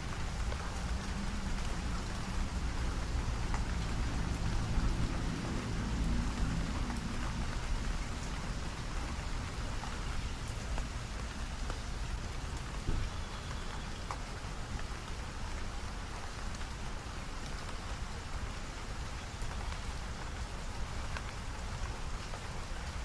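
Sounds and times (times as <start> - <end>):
low rumble: 0.0 - 13.1
steady rain falling: 0.0 - 23.0.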